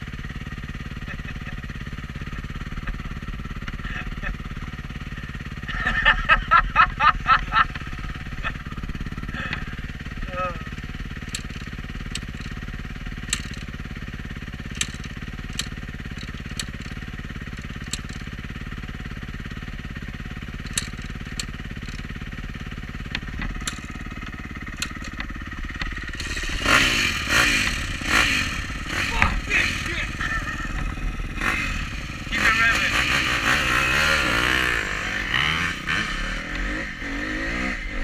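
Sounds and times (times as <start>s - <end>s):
dirt bike engine running: 0.0s - 38.0s
sharp clicks: 11.2s - 12.6s, 13.2s - 13.8s, 14.6s - 18.3s, 20.6s - 22.1s, 23.0s - 26.6s.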